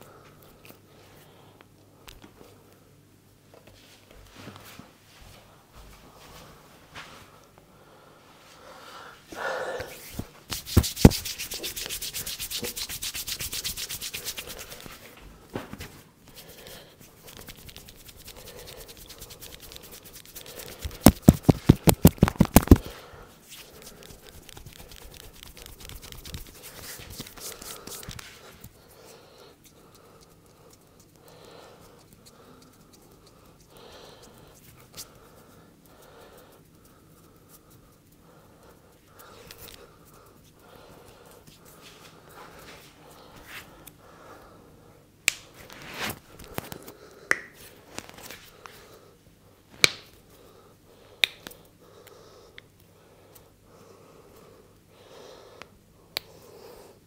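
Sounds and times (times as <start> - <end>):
hands rubbing through hair: 9.9 - 29.1, 45.3 - 46.9.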